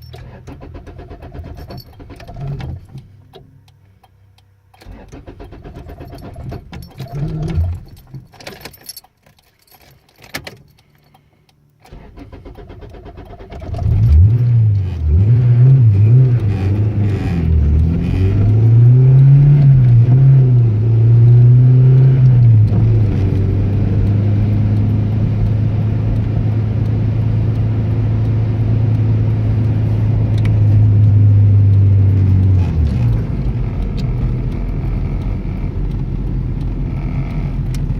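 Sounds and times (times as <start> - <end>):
car engine cranking and idling: 0.0 - 37.9
keys jangling: 5.9 - 11.2.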